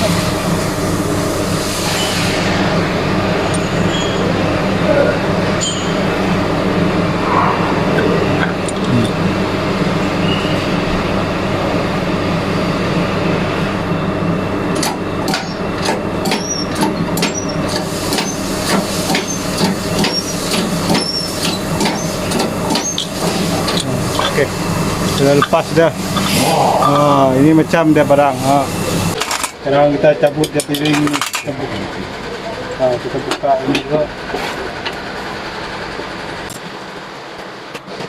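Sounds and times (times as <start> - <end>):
mechanical engine drone: 0.0 - 29.6.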